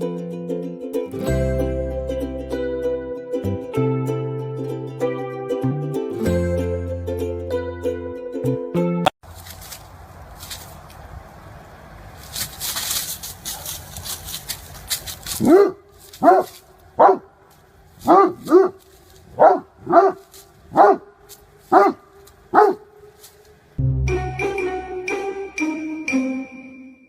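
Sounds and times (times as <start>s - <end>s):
dog barking: 15.4s - 17.4s, 18.0s - 18.8s, 19.4s - 23.1s.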